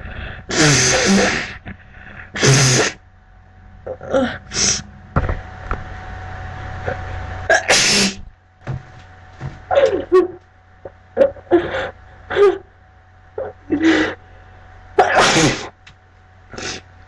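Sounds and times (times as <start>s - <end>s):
breathy sounds: 0.0s - 2.6s, 3.8s - 5.0s, 13.5s - 14.7s
person sneezing: 0.5s - 1.6s, 2.4s - 3.0s, 7.5s - 8.3s, 15.0s - 15.8s.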